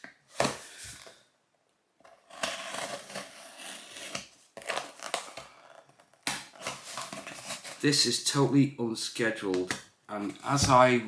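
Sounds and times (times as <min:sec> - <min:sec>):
cardboard parcel scraping and tearing: 0:02.2 - 0:05.3.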